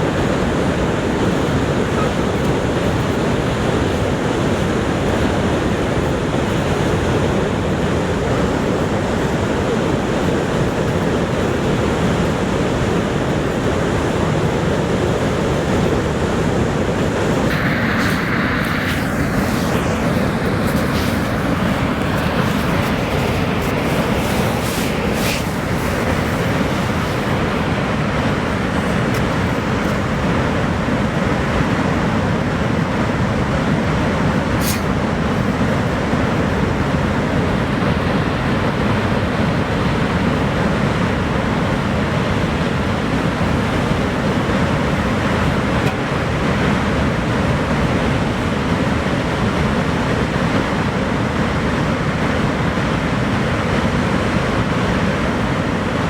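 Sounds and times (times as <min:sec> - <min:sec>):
waterfall rushing: 0:17.4 - 0:30.4.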